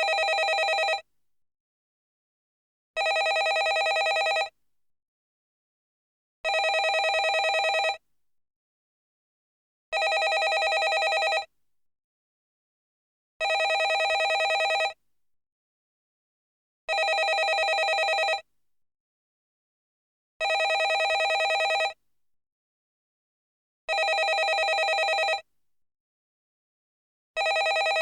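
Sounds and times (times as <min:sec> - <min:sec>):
landline telephone ringing: 0:00.0 - 0:01.0, 0:03.0 - 0:04.5, 0:06.5 - 0:08.0, 0:10.0 - 0:11.5, 0:13.4 - 0:15.0, 0:16.9 - 0:18.4, 0:20.4 - 0:22.0, 0:23.9 - 0:25.4, 0:27.4 - 0:28.0.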